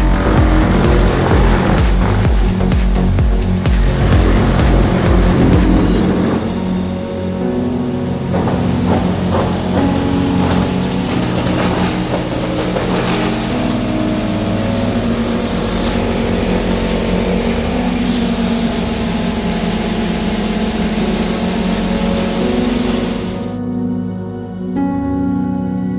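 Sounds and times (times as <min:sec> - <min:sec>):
wood chipper grinding: 0:00.0 - 0:23.6
sharp knocks: 0:08.2 - 0:14.6.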